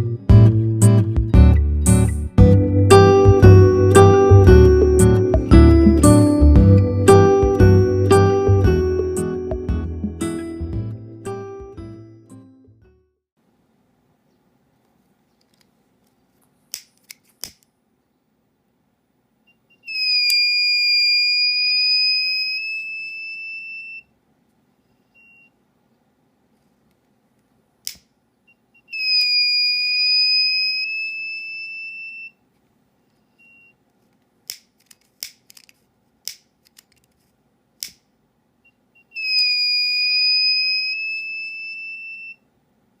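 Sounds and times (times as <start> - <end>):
fire alarm buzzer tone: 19.8 - 24.1, 28.8 - 32.4, 39.0 - 42.4.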